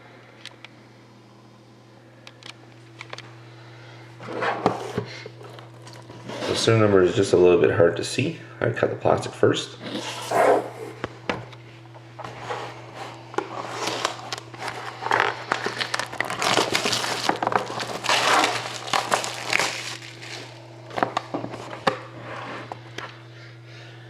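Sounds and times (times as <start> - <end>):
steady low hum: 0.0 - 24.0
plastic wrap crinkling: 13.7 - 20.6.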